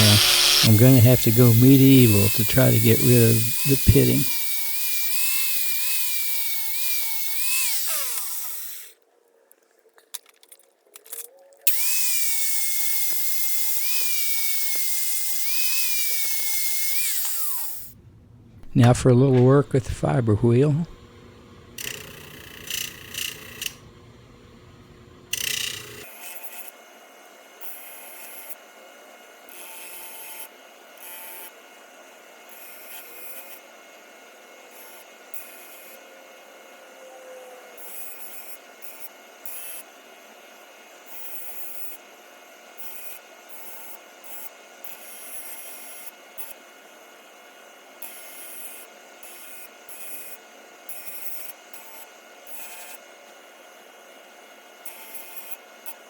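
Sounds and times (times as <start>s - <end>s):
abrasive wheel scrubbing steel: 0.0s - 4.5s.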